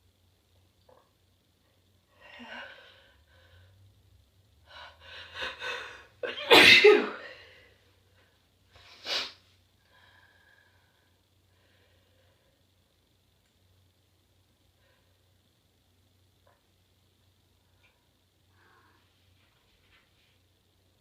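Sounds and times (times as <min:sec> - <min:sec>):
person sneezing: 0:06.2 - 0:07.4.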